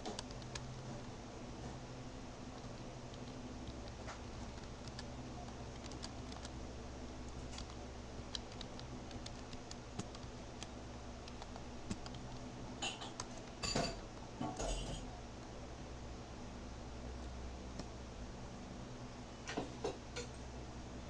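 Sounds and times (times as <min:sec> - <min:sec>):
keyboard and mouse clicks: 0:00.0 - 0:01.1, 0:02.6 - 0:06.5, 0:07.3 - 0:13.6
steady low hum: 0:00.0 - 0:21.0.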